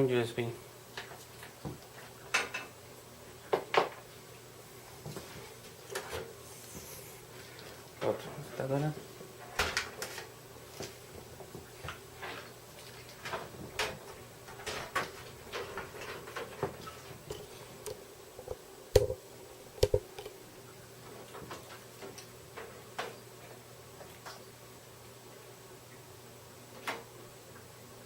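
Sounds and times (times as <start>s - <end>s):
loud thumps: 18.4s - 19.2s, 19.8s - 20.3s
cables and plugs clicking: 19.8s - 20.4s.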